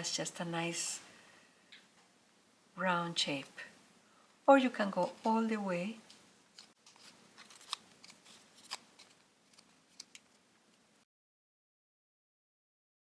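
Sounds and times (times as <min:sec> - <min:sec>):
paper crinkling and crackling: 0:06.6 - 0:10.4.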